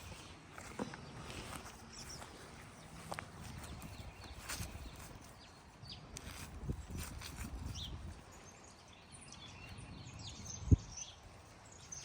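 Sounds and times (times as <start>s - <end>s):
walking footsteps: 0.0s - 5.4s
small birds chirping: 0.0s - 12.0s.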